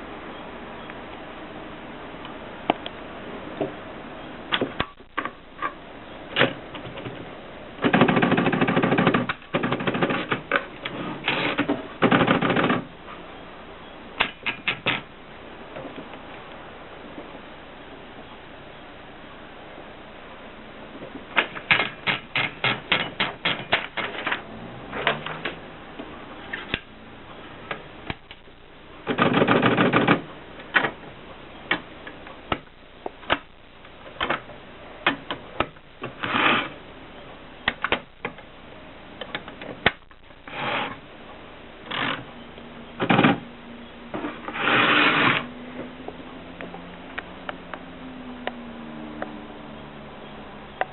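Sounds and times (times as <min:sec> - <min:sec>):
typewriter mechanism clattering: 0:21.4 - 0:24.4, 0:29.1 - 0:30.2.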